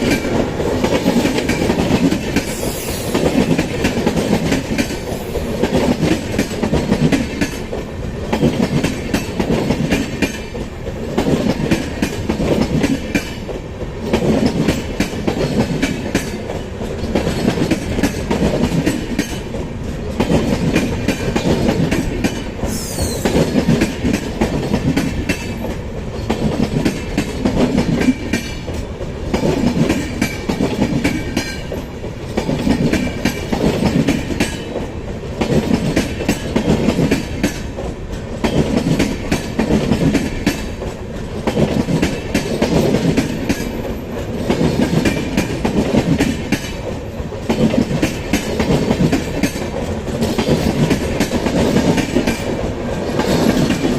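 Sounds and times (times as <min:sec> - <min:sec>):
train wheels clattering over joints: 0:00.0 - 0:53.9
high falling squeal: 0:22.7 - 0:23.4.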